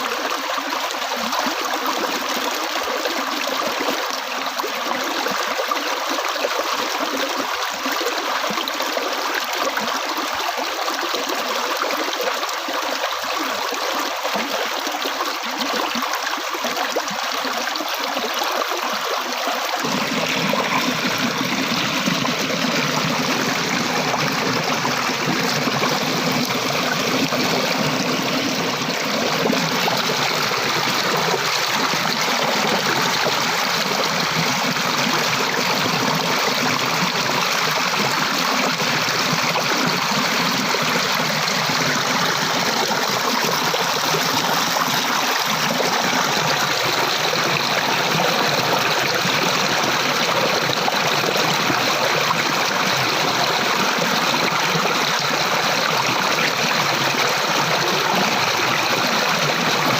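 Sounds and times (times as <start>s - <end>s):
stream water rushing: 14.7s - 59.9s.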